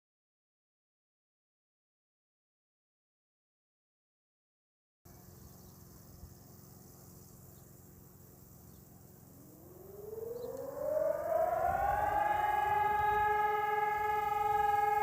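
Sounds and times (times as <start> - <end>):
civil defence siren wailing: 9.3 - 15.0.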